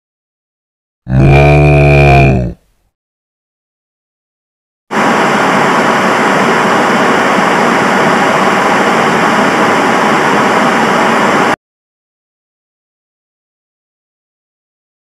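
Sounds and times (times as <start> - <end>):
loud steady rushing noise: 4.9 - 11.6.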